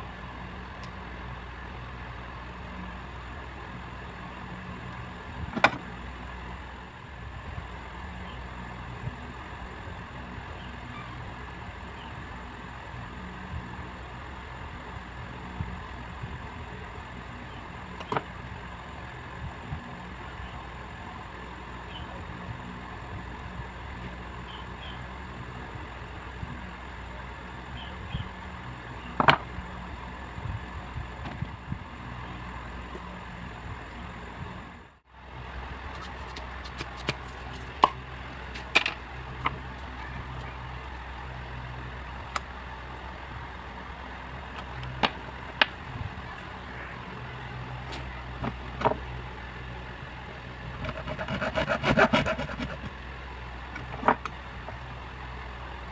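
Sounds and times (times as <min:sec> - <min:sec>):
low background hum: 0:00.0 - 0:55.9.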